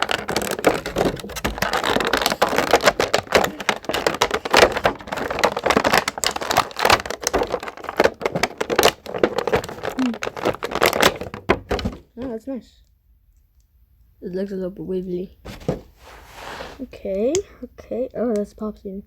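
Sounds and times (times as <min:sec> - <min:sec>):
plastic packaging crinkling: 0:00.0 - 0:12.4.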